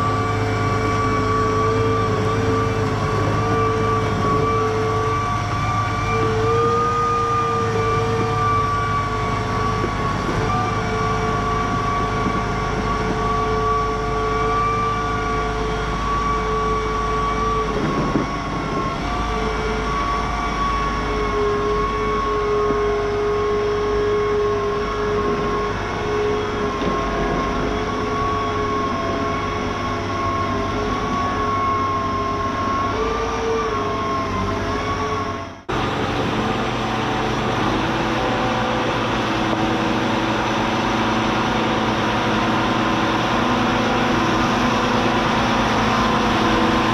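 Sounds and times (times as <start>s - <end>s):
low hum: 0.0s - 46.9s
machinery motor whine: 0.0s - 46.9s.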